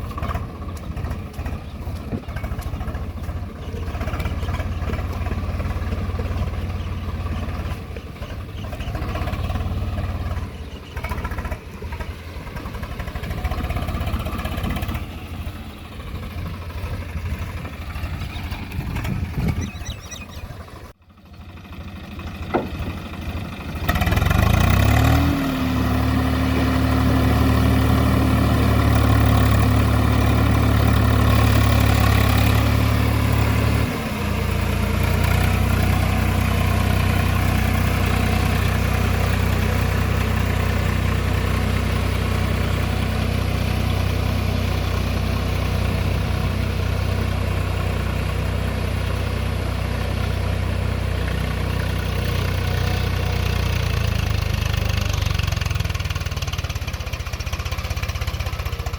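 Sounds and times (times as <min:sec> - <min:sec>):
tractor engine running: 0:00.0 - 0:58.9.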